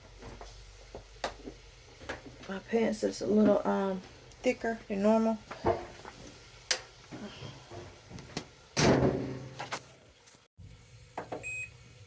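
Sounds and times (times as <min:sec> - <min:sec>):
door being shut: 0:08.8 - 0:09.8.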